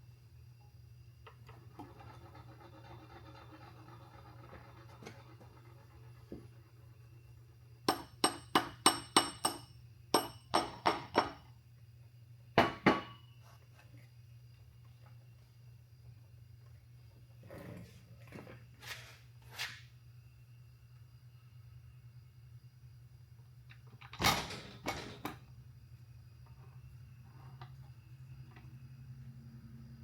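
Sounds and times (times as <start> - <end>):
hammer tapping on metal: 7.9 - 11.4.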